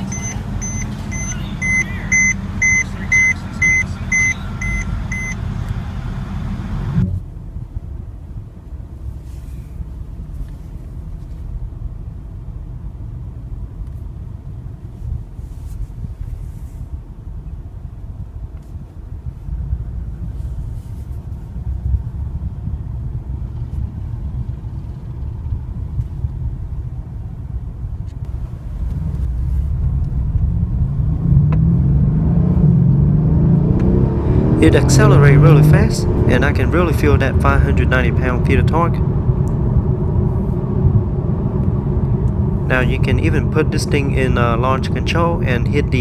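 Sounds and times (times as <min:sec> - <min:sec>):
car engine rumble: 0:00.0 - 0:46.0
road noise: 0:00.0 - 0:46.0.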